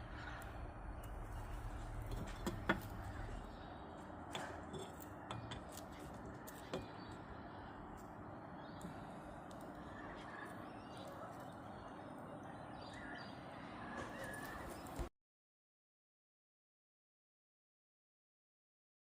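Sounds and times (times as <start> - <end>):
faint outdoor background noise: 0.0 - 15.1.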